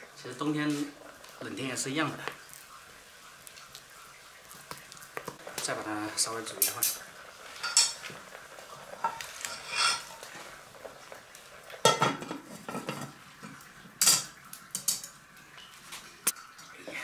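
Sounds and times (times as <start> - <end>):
metal utensil scraping wok: 7.6 - 8.1, 9.0 - 10.4.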